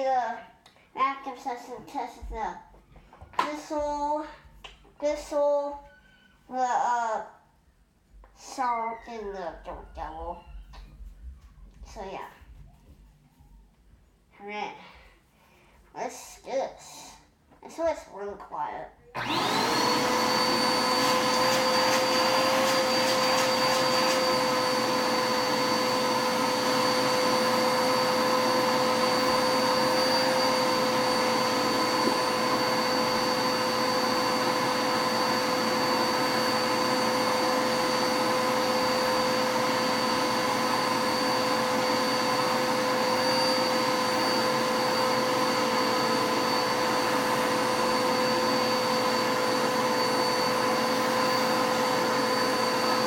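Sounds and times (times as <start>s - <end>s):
vacuum cleaner whining: 19.1s - 53.0s.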